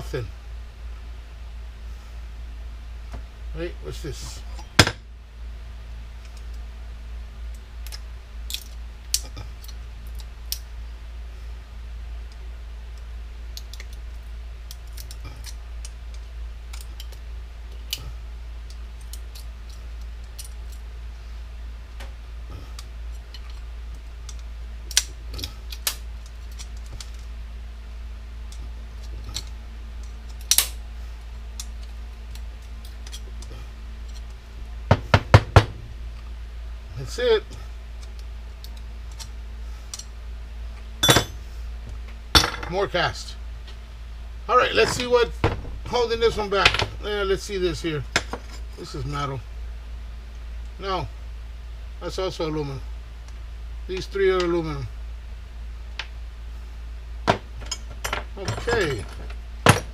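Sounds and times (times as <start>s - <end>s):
steady low hum: 0.0s - 59.9s
small parts and tools clinking: 13.6s - 17.2s, 31.5s - 34.4s, 41.0s - 41.4s, 57.3s - 59.9s.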